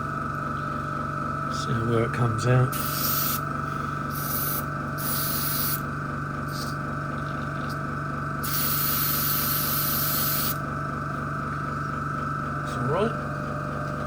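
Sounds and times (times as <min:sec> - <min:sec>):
small compressor pulsing hum: 0:00.0 - 0:14.0
airbrush spraying hiss: 0:02.7 - 0:03.4, 0:04.1 - 0:05.8, 0:08.4 - 0:10.6.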